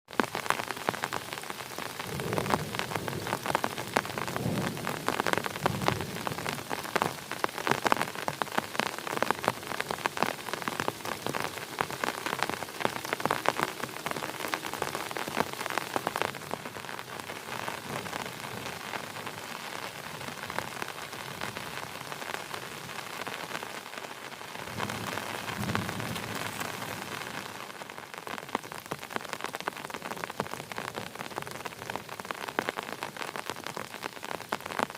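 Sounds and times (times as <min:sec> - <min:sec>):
heavy rain patter: 0:00.1 - 0:34.9.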